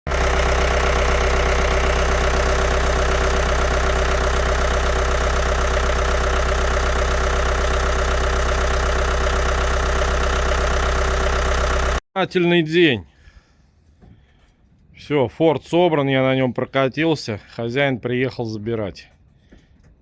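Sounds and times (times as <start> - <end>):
diesel engine idling: 0.1 - 12.0.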